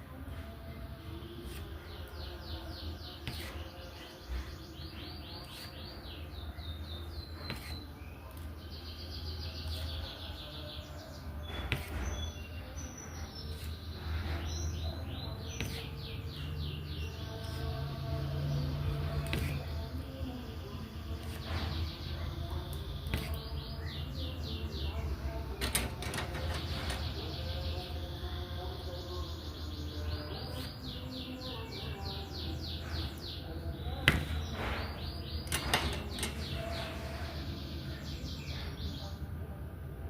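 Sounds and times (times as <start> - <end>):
tools clicking and tapping: 25.6 - 27.1, 35.4 - 36.6.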